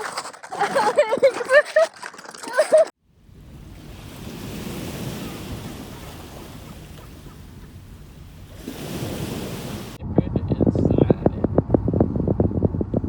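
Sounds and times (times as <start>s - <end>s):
wind noise on microphone: 3.1s - 13.0s.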